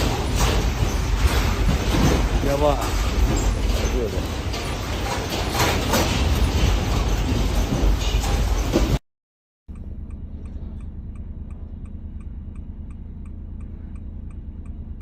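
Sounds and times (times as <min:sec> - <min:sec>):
loud rattling: 0:00.0 - 0:09.0
fast regular ticking: 0:09.7 - 0:15.0
steady low hum: 0:09.7 - 0:15.0.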